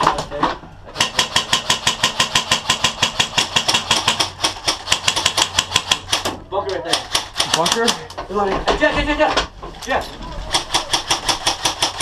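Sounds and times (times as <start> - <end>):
airsoft rifle firing full-auto: 0.9 - 6.3, 10.5 - 12.0.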